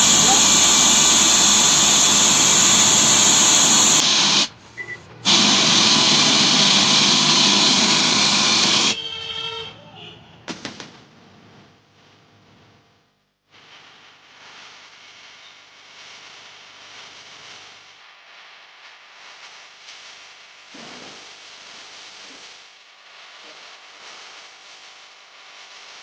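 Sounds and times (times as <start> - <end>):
radio static hissing: 0.0 - 4.6, 5.3 - 9.0, 13.5 - 26.0.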